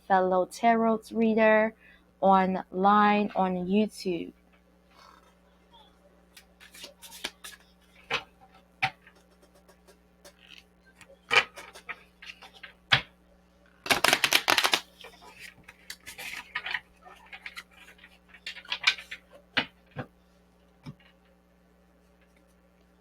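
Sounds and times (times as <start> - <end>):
cards tapping and flicking: 6.3 - 10.6, 13.8 - 16.8
cards shuffling: 6.3 - 10.7, 11.3 - 13.0, 13.8 - 19.2.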